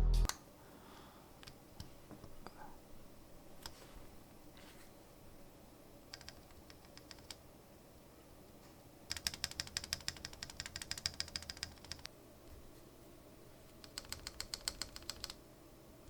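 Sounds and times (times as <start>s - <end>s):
keyboard keys clicking: 6.1s - 7.4s, 9.1s - 12.1s, 13.8s - 15.4s.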